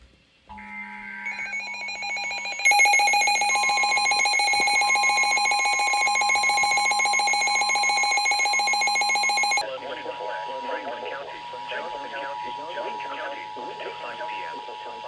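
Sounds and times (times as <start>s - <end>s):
two-tone alarm: 0.5s - 9.6s
warbling data-burst tones: 1.3s - 9.6s.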